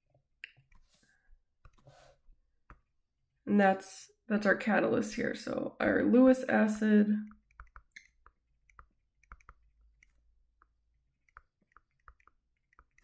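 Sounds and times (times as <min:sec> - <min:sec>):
faint small clicks and ticks: 0:07.2 - 0:13.0.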